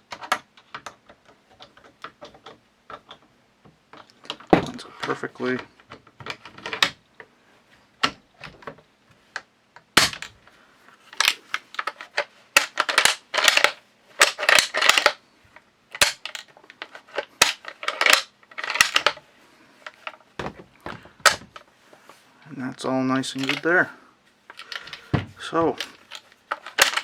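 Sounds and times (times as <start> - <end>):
metal parts rattling: 11.1 - 15.2, 15.9 - 19.2, 23.3 - 23.8, 24.5 - 27.0.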